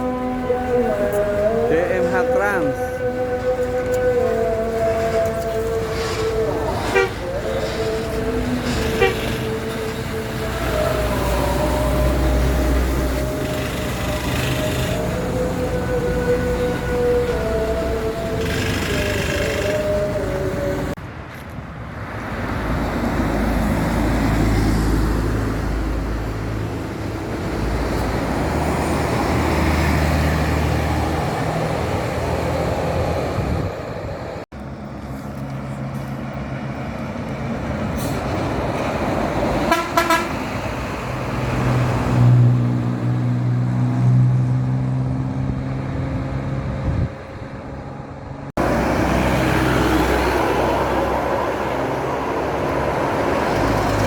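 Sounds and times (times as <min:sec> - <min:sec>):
multi-tone bus horns: 0:00.0 - 0:21.0, 0:38.9 - 0:42.9
bus engines running: 0:00.0 - 0:54.0.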